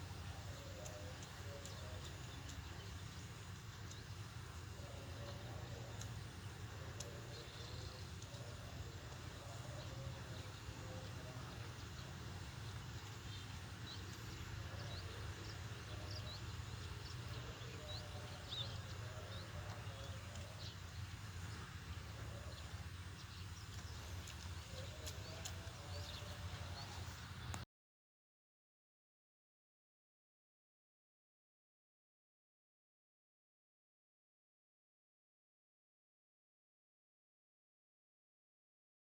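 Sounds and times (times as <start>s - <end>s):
steady low hum: 0.0s - 27.6s.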